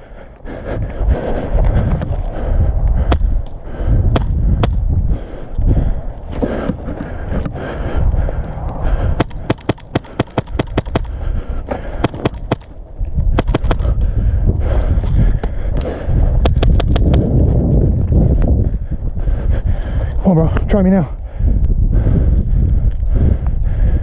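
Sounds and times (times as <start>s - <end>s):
heavy low thumping: 0.5s - 20.7s
airsoft guns firing: 9.2s - 11.2s, 12.0s - 12.7s, 13.4s - 13.9s.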